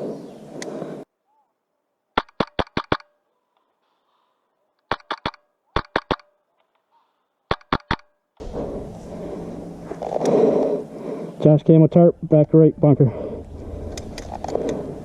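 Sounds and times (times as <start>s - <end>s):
airsoft rifle shots: 2.2s - 3.2s, 4.9s - 6.4s, 7.5s - 8.2s.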